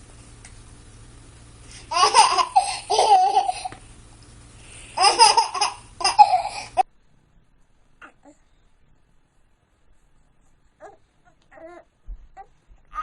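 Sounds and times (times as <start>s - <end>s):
baby laughing: 1.9s - 3.8s, 5.0s - 6.8s.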